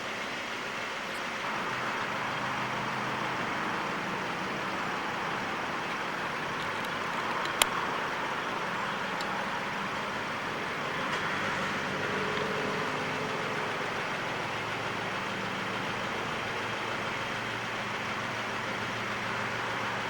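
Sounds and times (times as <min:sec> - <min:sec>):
road traffic: 0:00.0 - 0:20.0.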